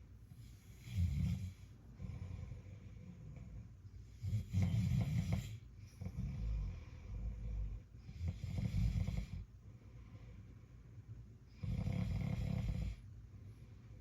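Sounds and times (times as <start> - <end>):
person snoring: 11.6 - 13.0.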